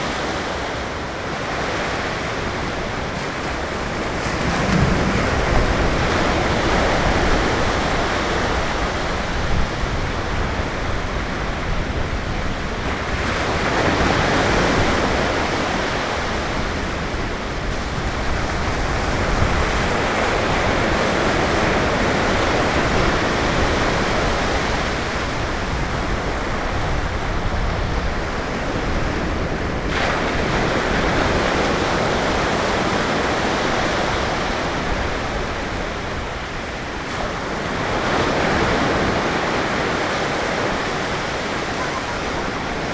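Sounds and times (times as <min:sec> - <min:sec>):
ocean surf breaking: 0:00.0 - 0:42.9.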